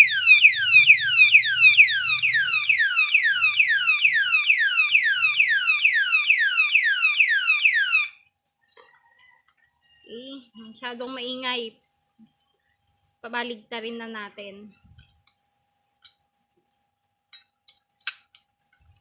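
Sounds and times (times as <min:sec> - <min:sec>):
alarm siren electronic chirps: 0:00.0 - 0:08.2.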